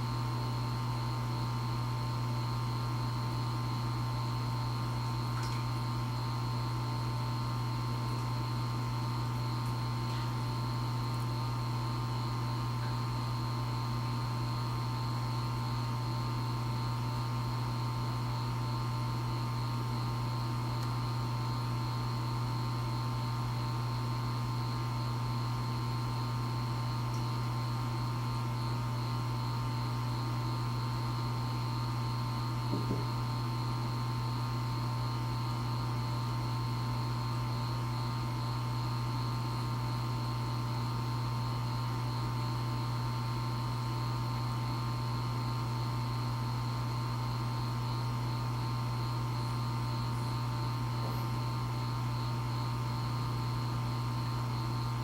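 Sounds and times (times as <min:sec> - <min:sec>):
aquarium pump humming and whining: 0:00.0 - 0:55.0.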